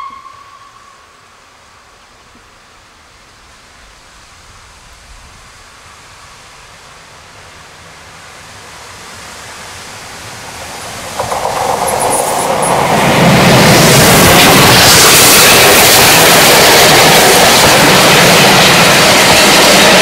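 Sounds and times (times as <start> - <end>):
steam train approaching: 0.0 - 20.0
wheels rattling on rails: 8.4 - 20.0.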